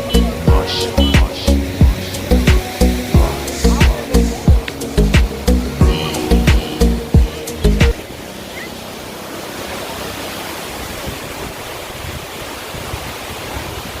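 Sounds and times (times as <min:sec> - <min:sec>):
music with a beat: 0:00.0 - 0:08.0
steady rushing noise: 0:00.0 - 0:14.0.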